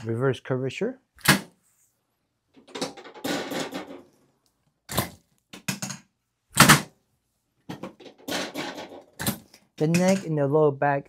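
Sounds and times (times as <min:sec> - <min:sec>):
drop table knocks and clunk: 0:07.7 - 0:09.4.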